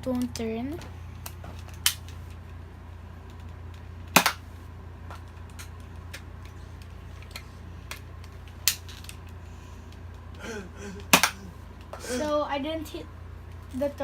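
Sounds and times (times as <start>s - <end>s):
sharp double snap of mechanism: 4.2s - 4.4s.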